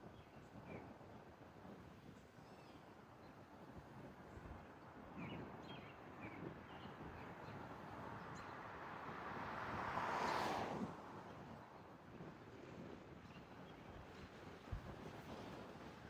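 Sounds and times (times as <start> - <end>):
wind and road noise of car: 6.5 - 16.0.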